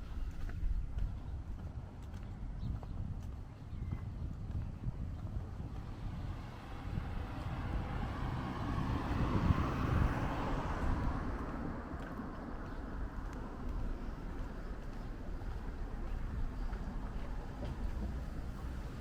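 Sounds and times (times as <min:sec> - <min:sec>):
motor vehicle passing: 0:05.4 - 0:19.0.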